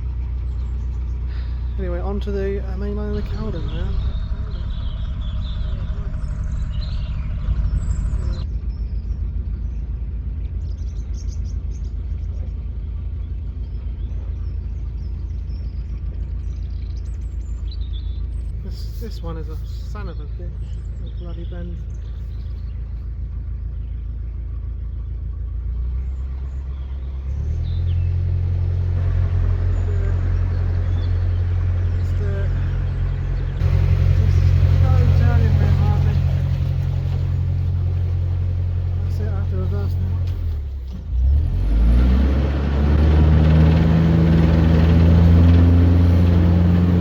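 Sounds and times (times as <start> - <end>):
diesel boat engine running: 0.0 - 47.0
higher hum: 32.8 - 40.3.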